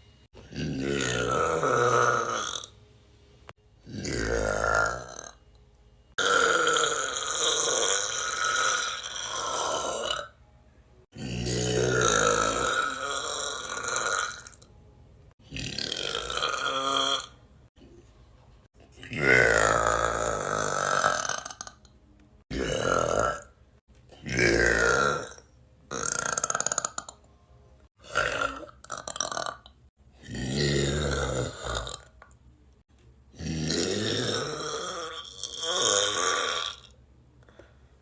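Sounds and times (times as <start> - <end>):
person burping loudly: 0.4 - 2.7, 3.8 - 5.4, 6.2 - 10.4, 11.1 - 14.7, 15.4 - 17.4, 19.0 - 23.6, 24.2 - 27.2, 28.0 - 32.4, 33.3 - 37.0.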